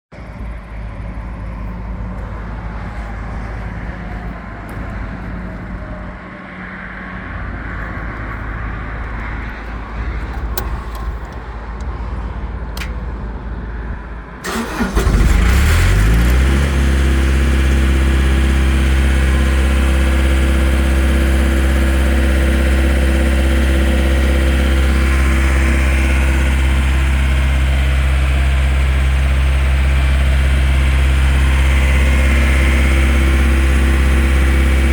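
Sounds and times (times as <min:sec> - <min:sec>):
diesel engine starting and idling: 0:00.2 - 0:06.2, 0:06.8 - 0:34.9
low hum: 0:16.1 - 0:34.9.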